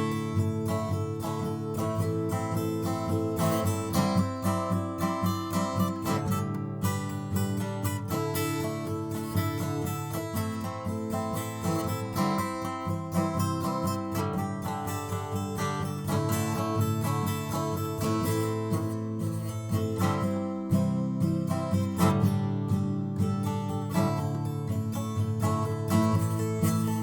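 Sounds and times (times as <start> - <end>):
acoustic guitar music: 0.0 - 27.0.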